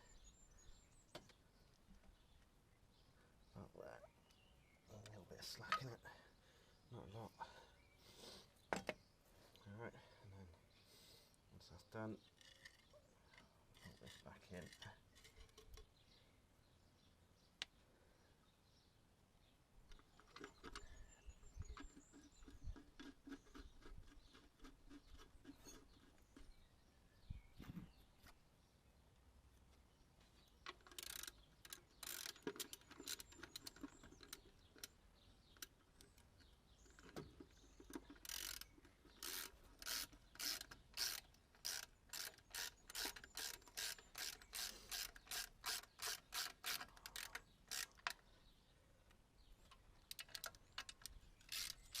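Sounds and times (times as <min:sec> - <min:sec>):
ratchet wrench clicking: 0:30.7 - 0:34.9, 0:37.9 - 0:48.2, 0:50.1 - 0:52.0.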